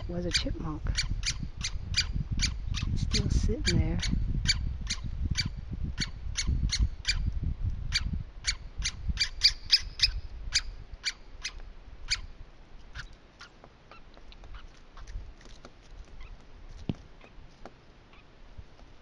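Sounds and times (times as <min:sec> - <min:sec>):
chipmunk chip calls: 0:00.0 - 0:07.3, 0:07.9 - 0:17.4.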